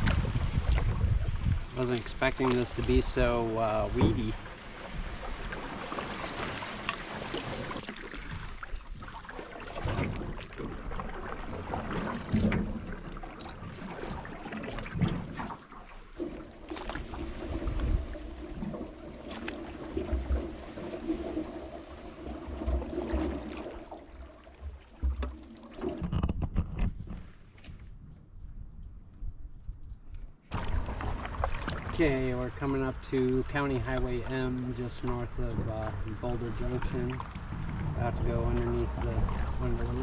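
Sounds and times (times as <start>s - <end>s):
low thumps on canoe: 0.0s - 19.4s
paddle strokes in water: 0.0s - 28.5s, 29.6s - 40.0s.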